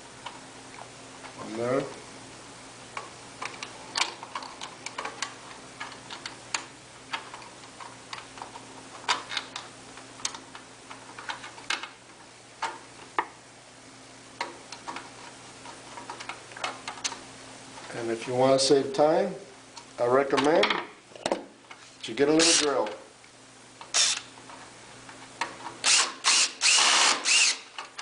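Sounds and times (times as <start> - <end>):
screwdriver turning screws: 22.4 - 22.8, 23.9 - 24.3, 25.8 - 28.0.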